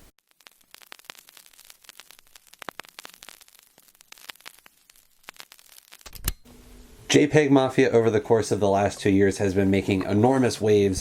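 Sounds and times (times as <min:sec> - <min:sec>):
light hiss: 0:00.0 - 0:07.2
vinyl record crackles and pops: 0:00.0 - 0:11.0.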